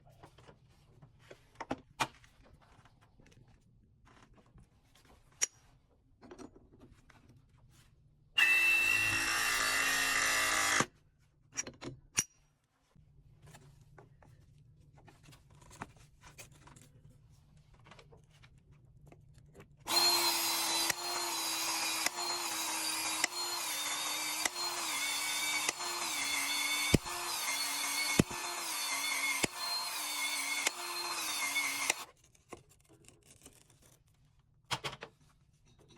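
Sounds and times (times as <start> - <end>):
battery press tool running: 8.4 - 10.9, 19.9 - 32.1
pipe expansion tool cycling: 19.9 - 32.0.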